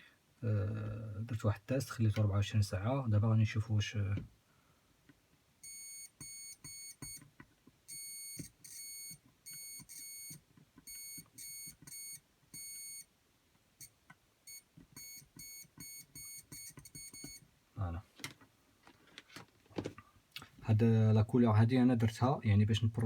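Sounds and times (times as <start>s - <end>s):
multimeter buzzer beeping: 5.6s - 7.2s, 7.9s - 13.1s, 14.5s - 17.4s.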